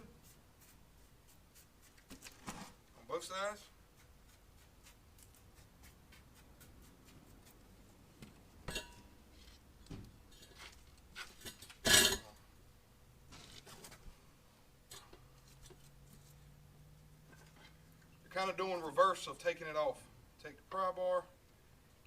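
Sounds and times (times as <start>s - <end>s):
sharp metal clank: 8.7s - 9.1s, 11.8s - 12.3s.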